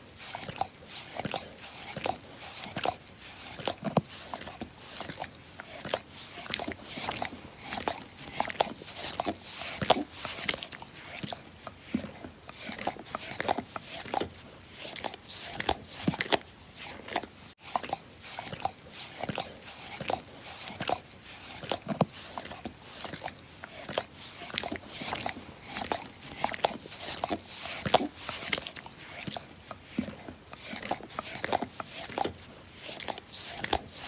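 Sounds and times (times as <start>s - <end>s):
dog licking and slurping: 0.0s - 34.0s.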